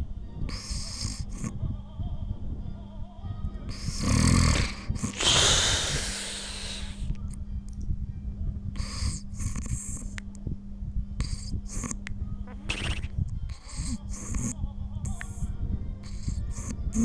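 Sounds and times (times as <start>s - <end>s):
person snoring: 0.5s - 1.6s, 3.7s - 7.1s.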